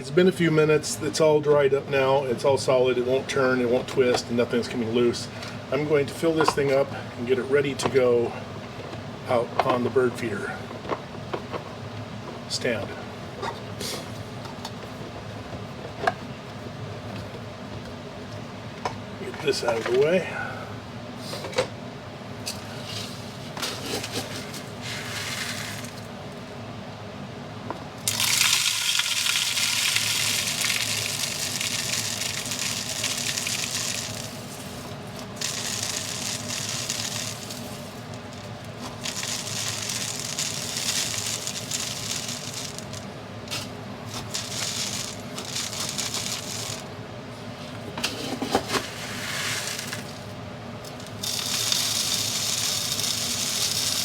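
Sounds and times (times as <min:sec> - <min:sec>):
seed pouring through plastic funnel: 0:28.1 - 0:34.6, 0:35.4 - 0:43.0, 0:44.1 - 0:46.9, 0:49.3 - 0:50.2, 0:51.2 - 0:54.0.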